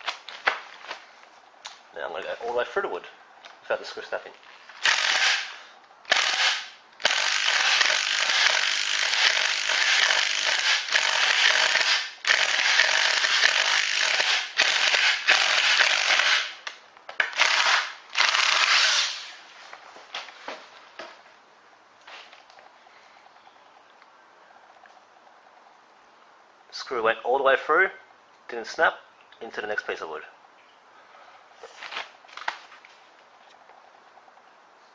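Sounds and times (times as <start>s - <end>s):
power drill driving screw into wood: 4.8s - 16.6s, 17.2s - 19.4s.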